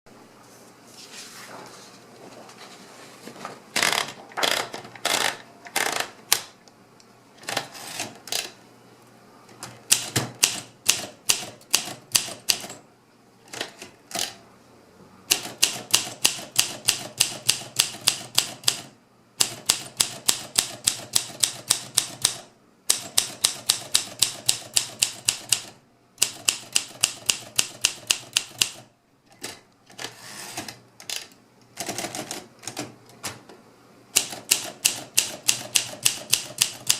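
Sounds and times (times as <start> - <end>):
manual typewriter key clicks: 9.9 - 12.8, 15.3 - 29.5, 34.2 - 36.9.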